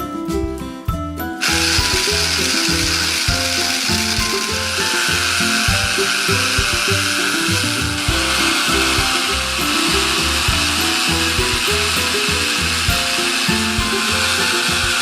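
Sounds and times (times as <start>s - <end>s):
background music melody: 0.0s - 15.0s.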